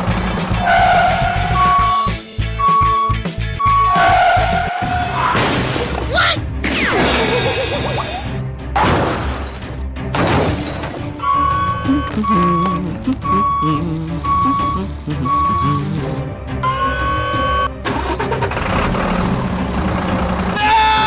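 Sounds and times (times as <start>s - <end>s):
background music: 0.0s - 21.0s
vehicle reversing beeps: 1.5s - 4.1s, 11.2s - 17.8s
crash and shatter effects: 4.0s - 8.0s, 8.8s - 11.2s.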